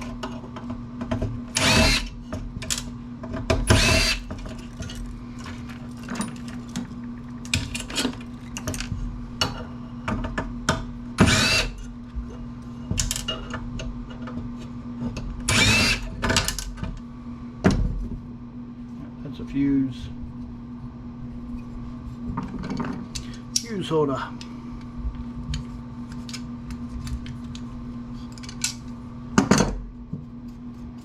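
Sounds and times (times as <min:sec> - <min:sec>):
steady low hum: 0:00.0 - 0:31.0
power drill spinning: 0:01.6 - 0:02.2, 0:03.7 - 0:04.3, 0:11.3 - 0:11.7, 0:15.5 - 0:16.1.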